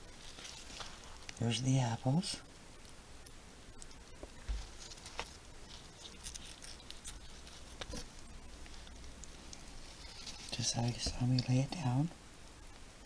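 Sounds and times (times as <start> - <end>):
moist bedding crackling and rustling: 0.0 - 12.1.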